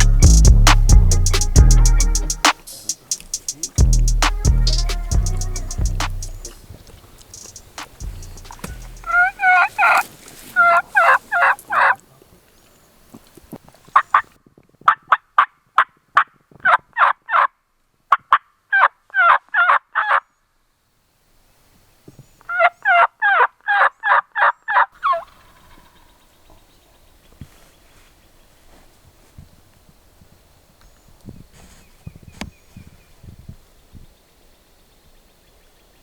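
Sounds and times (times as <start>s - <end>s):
wild turkey calling: 0.0s - 12.0s, 22.5s - 27.0s.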